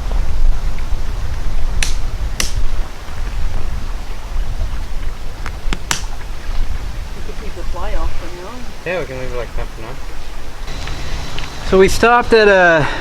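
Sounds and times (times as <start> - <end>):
sharp clicks: 1.8 - 2.6, 5.7 - 6.1
steady low rumble: 10.4 - 13.0.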